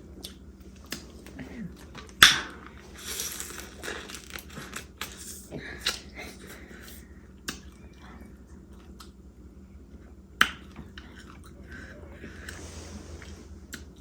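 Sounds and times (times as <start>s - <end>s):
crab shells crinkling and tearing: 1.9s - 6.1s.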